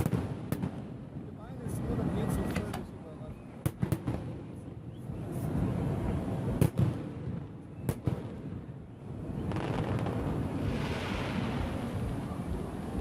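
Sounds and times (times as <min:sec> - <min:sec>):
sharp firework bangs: 0:00.0 - 0:01.4, 0:06.5 - 0:08.6, 0:09.5 - 0:12.0
fireworks rumble of bursts: 0:00.0 - 0:13.0.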